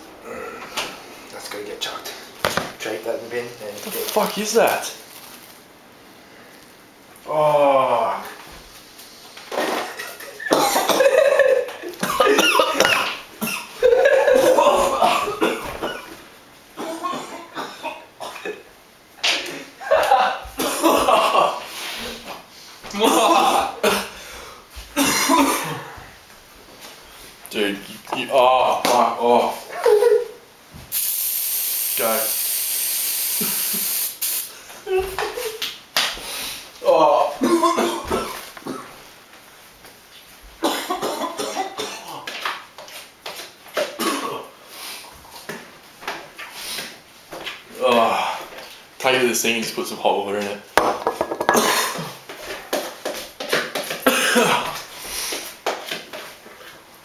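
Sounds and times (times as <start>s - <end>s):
men coughing and gagging: 9.7s - 16.2s, 16.8s - 18.7s, 19.8s - 21.6s, 22.9s - 24.2s, 24.9s - 26.0s, 37.3s - 38.9s, 40.6s - 42.3s, 43.9s - 44.6s, 51.4s - 52.2s, 54.0s - 54.8s
men laughing: 9.7s - 16.2s, 19.6s - 21.7s, 22.9s - 24.1s, 29.5s - 30.4s, 34.8s - 35.6s.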